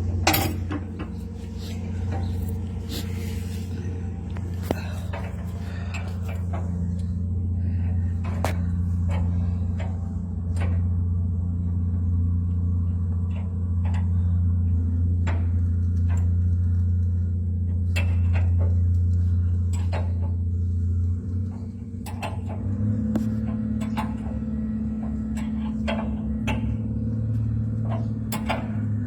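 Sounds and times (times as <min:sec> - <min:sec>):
low machine hum: 0:00.0 - 0:29.0
clicks and knocks of metal parts: 0:00.2 - 0:02.6, 0:21.4 - 0:29.0.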